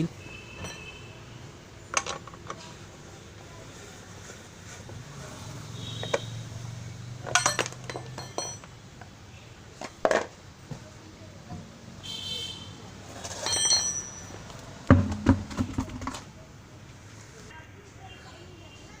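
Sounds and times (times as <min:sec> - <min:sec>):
metal tools clinking: 0:00.6 - 0:00.9, 0:07.2 - 0:08.8, 0:13.2 - 0:14.6
heavy thump: 0:14.9 - 0:16.1.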